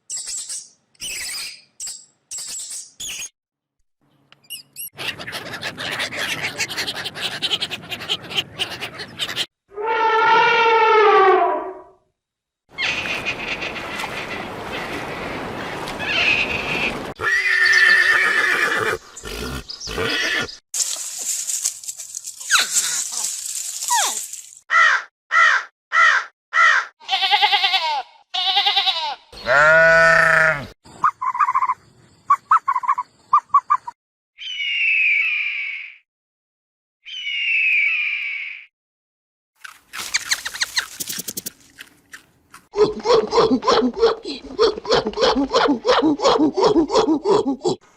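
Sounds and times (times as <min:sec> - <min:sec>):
quick chirps: 0:40.0 - 0:41.7.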